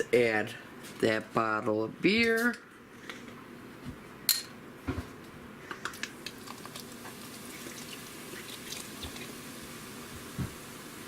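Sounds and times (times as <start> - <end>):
beer pouring and fizzing: 6.2 - 11.0.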